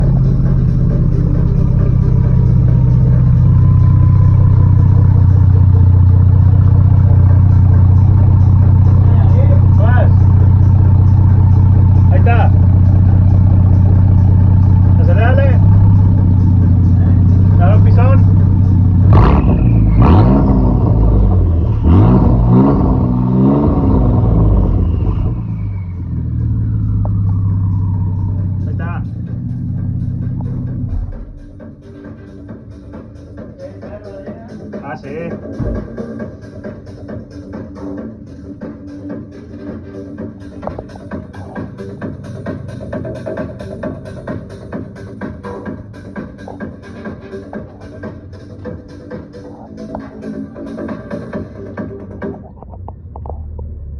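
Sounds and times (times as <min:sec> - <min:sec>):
car engine exhaust running: 0:00.0 - 0:33.4, 0:35.0 - 0:53.9
turbo whistle: 0:24.6 - 0:28.3.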